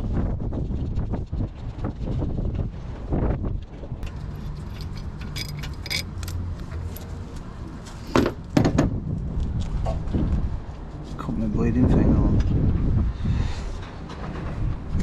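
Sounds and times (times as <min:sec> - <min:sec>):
wind rumble on microphone: 0:00.0 - 0:07.8, 0:08.5 - 0:15.0
metal parts clinking: 0:04.0 - 0:07.0
loud knocks: 0:08.1 - 0:09.0.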